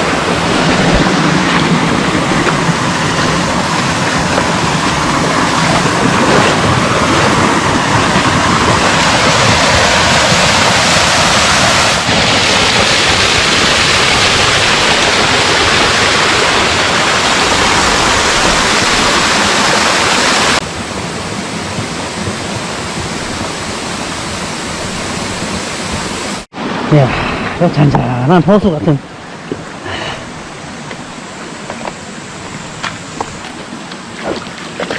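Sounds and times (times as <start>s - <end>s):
stream rushing over rocks: 0.0s - 34.9s.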